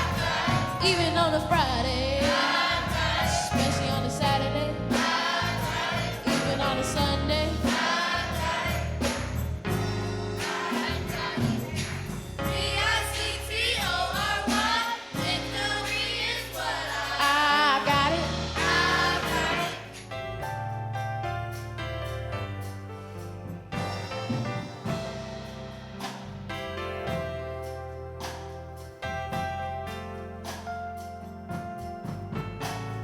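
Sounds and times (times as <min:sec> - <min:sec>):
choir singing gospel song: 0:00.0 - 0:20.4
instrumental backing with bass: 0:00.0 - 0:33.0.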